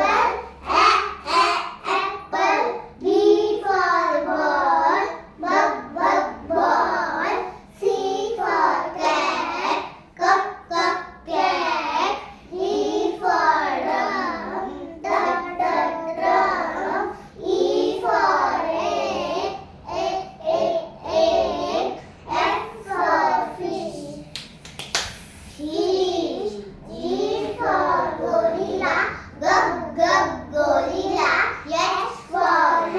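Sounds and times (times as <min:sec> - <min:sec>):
children chanting in sing-song: 0:00.0 - 0:24.5, 0:25.2 - 0:32.9.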